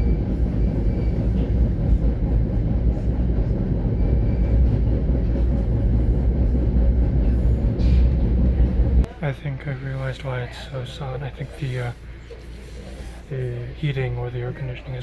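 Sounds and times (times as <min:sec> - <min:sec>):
train coach low rumble: 0:00.0 - 0:09.2.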